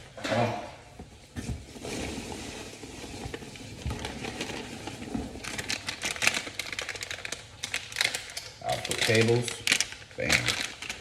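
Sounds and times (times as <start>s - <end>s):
plastic rustling and crinkling: 0.4s - 11.0s.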